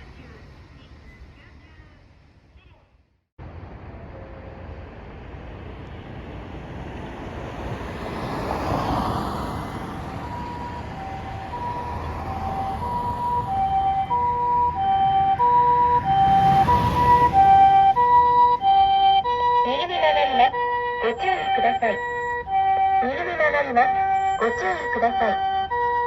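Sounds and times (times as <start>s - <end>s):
vehicle and road noise: 0.0s - 26.0s
two-tone ambulance siren: 7.4s - 26.0s.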